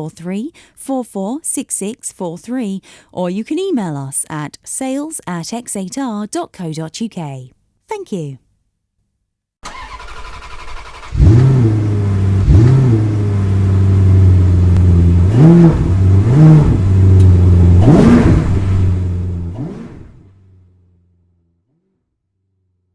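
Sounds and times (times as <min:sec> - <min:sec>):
engine idling and revving: 0:09.6 - 0:21.9.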